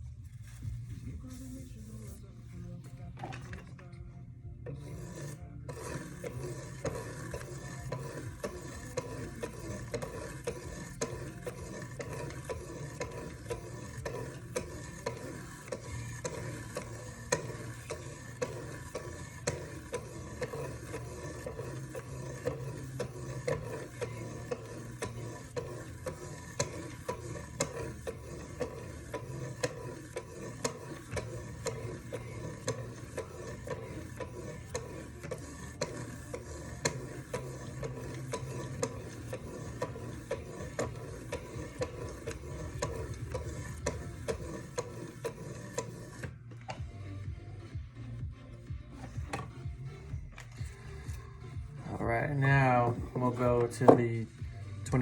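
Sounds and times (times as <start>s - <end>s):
sharpening stones rasping on knife: 4.7s - 46.2s.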